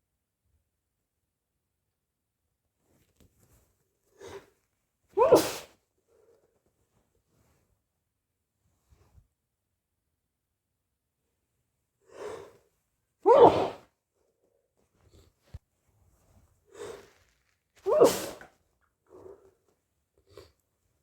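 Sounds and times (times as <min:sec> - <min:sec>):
person sneezing: 0:05.2 - 0:05.7, 0:13.2 - 0:13.9, 0:17.8 - 0:18.5.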